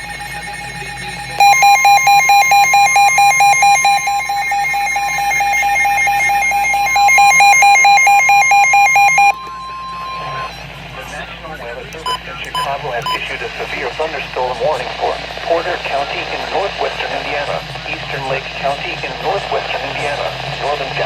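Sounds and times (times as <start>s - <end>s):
rapid alarm beeping: 0.0s - 10.7s, 12.0s - 21.0s
long steady alarm tone: 0.0s - 10.8s.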